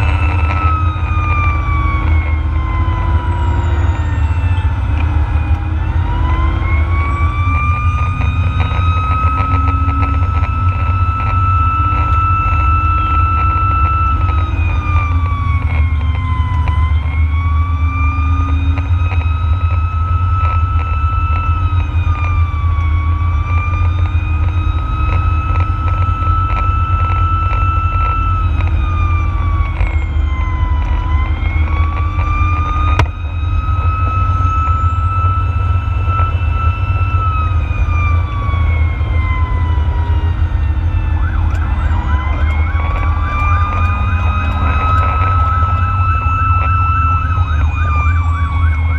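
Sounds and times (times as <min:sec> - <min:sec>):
engine and road rumble: 0:00.0 - 0:48.9
fast warbling siren: 0:00.0 - 0:48.9
fire engine siren wailing: 0:00.0 - 0:48.9.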